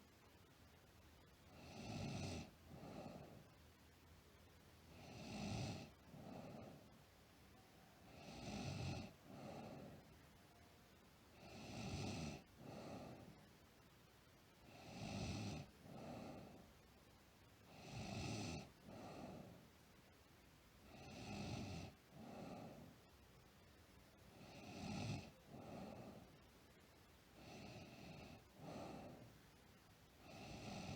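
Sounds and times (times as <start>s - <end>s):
girl snoring: 1.5s - 3.5s, 4.9s - 6.9s, 8.0s - 10.1s, 11.4s - 13.4s, 14.6s - 16.6s, 17.6s - 19.6s, 20.8s - 23.0s, 24.3s - 26.4s, 27.4s - 29.3s, 30.2s - 30.9s.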